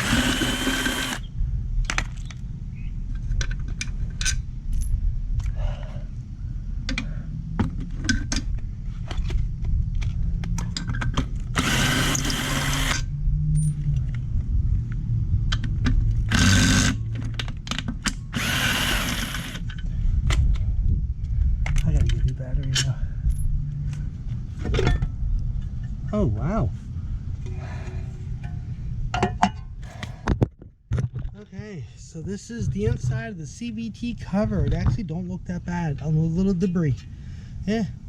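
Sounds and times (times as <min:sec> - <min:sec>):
cordless drill running: 0:00.0 - 0:01.3, 0:11.6 - 0:13.0, 0:16.3 - 0:17.0, 0:18.3 - 0:19.6
low rumble: 0:00.0 - 0:17.7, 0:18.3 - 0:30.4.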